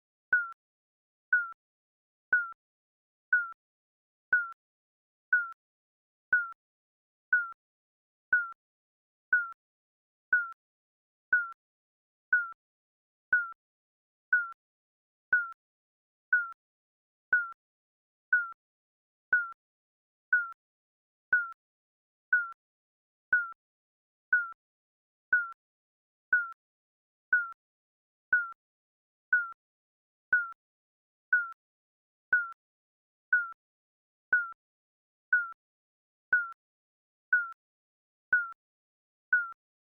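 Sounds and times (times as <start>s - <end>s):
timer beeping: 0.3s - 0.6s, 1.3s - 1.6s, 2.3s - 2.6s, 3.3s - 3.6s, 4.3s - 4.6s, 5.3s - 5.6s, 6.3s - 6.6s, 7.3s - 7.6s, 8.3s - 8.6s, 9.3s - 9.6s, 10.3s - 10.6s, 11.3s - 11.6s, 12.3s - 12.6s, 13.3s - 13.6s, 14.3s - 14.6s, 15.3s - 15.6s, 16.3s - 16.6s, 17.3s - 17.6s, 18.3s - 18.6s, 19.3s - 19.6s, 20.3s - 20.6s, 21.3s - 21.6s, 22.3s - 22.6s, 23.3s - 23.6s, 24.3s - 24.6s, 25.3s - 25.6s, 26.3s - 26.6s, 27.3s - 27.6s, 28.3s - 28.6s, 29.3s - 29.6s, 30.3s - 30.6s, 31.3s - 31.6s, 32.3s - 32.6s, 33.3s - 33.6s, 34.3s - 34.6s, 35.3s - 35.6s, 36.3s - 36.6s, 37.3s - 37.6s, 38.3s - 38.6s, 39.3s - 39.6s.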